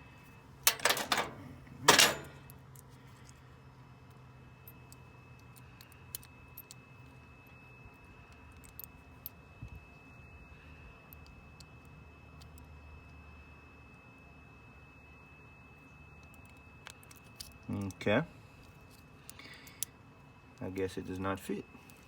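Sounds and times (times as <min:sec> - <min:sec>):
metal parts clinking and rattling: 0:00.6 - 0:02.6.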